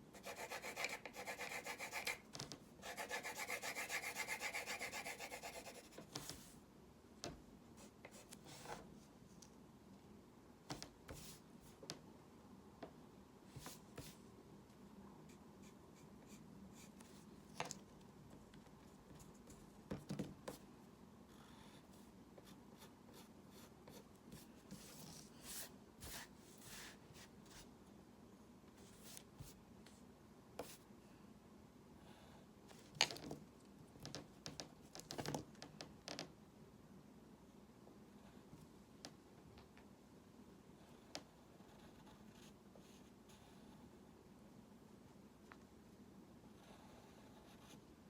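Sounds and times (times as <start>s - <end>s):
pen scratching on paper: 0.1s - 2.2s, 2.8s - 6.4s, 41.5s - 43.8s, 46.6s - 47.8s.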